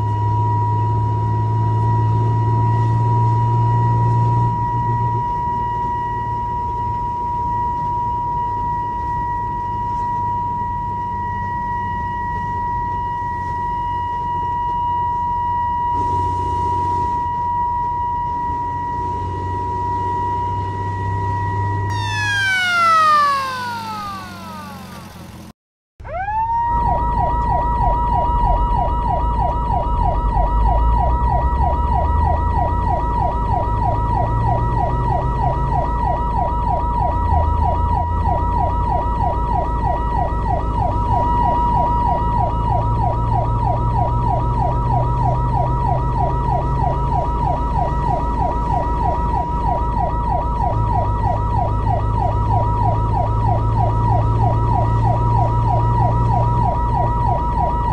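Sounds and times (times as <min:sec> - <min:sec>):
fire truck siren wailing: 0:21.9 - 0:57.9.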